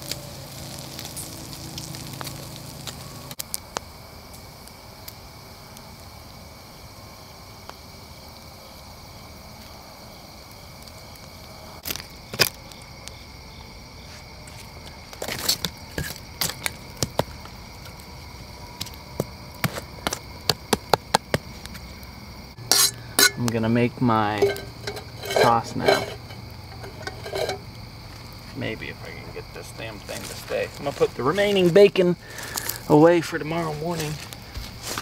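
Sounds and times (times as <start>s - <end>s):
bacon sizzling on hot rocks: 0.0s - 8.1s, 9.5s - 35.0s
sharp clicks and clinks: 22.7s - 23.6s, 24.3s - 27.6s.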